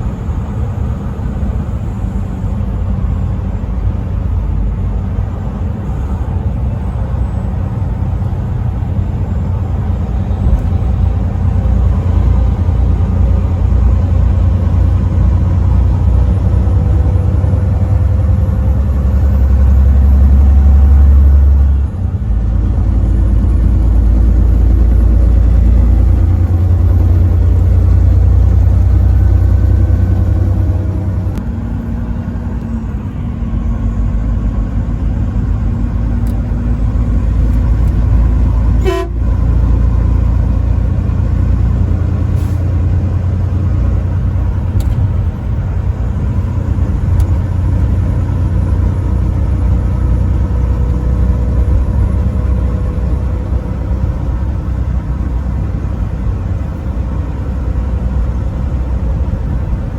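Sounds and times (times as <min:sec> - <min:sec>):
heavy truck engine and road noise: 0:00.0 - 0:59.9.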